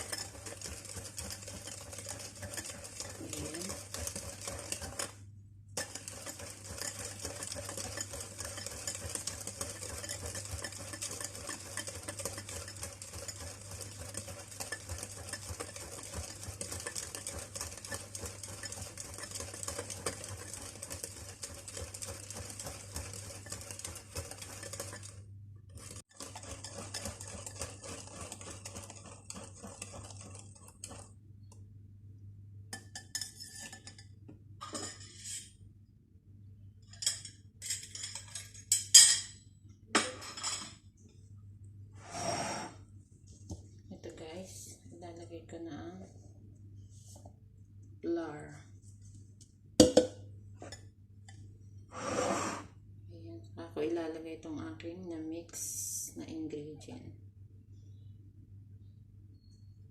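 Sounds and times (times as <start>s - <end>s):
utensil stirring in a bowl: 0.0s - 31.6s, 32.7s - 34.2s, 36.9s - 39.0s.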